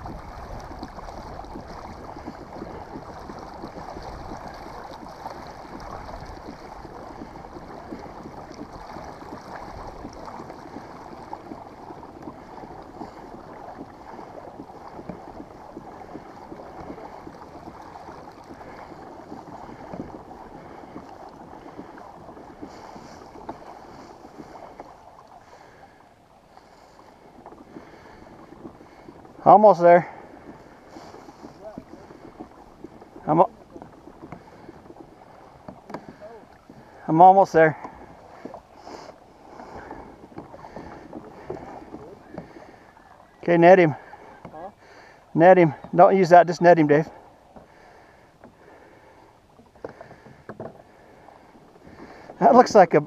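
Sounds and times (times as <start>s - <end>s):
wind on microphone: 0.0s - 25.1s
water rushing past a kayak hull: 0.0s - 53.0s.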